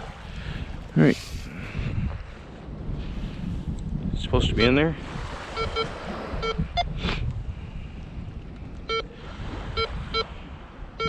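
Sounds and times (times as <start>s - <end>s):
wind on microphone: 0.0s - 11.0s
metal detector beeps: 4.5s - 4.8s, 5.6s - 7.0s, 8.9s - 9.1s, 9.7s - 10.3s.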